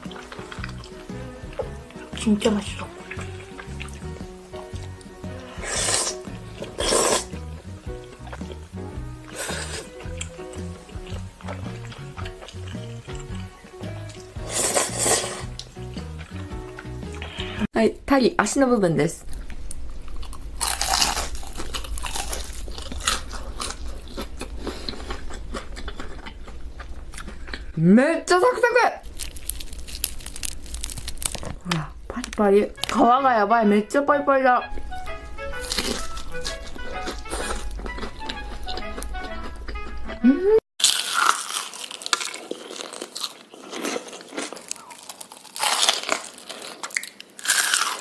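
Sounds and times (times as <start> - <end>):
crunchy chewing of chicken skin: 9.3 - 13.4, 20.1 - 27.7, 29.0 - 31.6, 35.6 - 40.0, 40.8 - 48.0.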